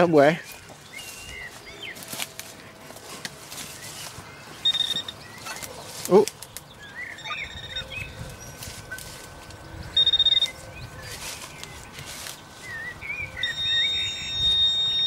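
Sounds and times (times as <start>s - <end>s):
birds chirping: 0.0s - 15.0s
metal detector beeping: 4.6s - 5.6s, 7.0s - 8.1s, 9.9s - 10.6s, 13.3s - 15.0s.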